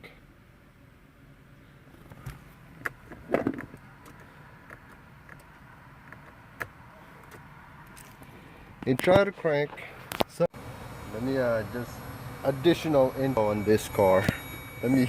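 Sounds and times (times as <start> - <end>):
sharp clicks and light knocks: 2.2 - 10.4.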